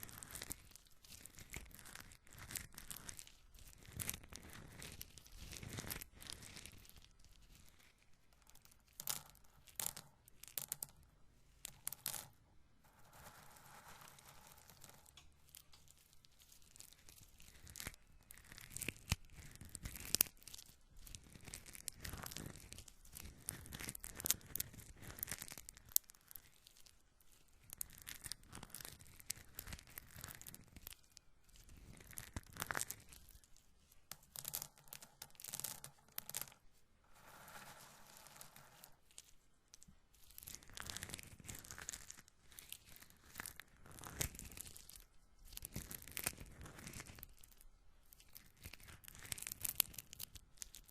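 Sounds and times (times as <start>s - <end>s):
corn kernels crackling and rustling: 0.0s - 10.9s, 12.9s - 50.9s.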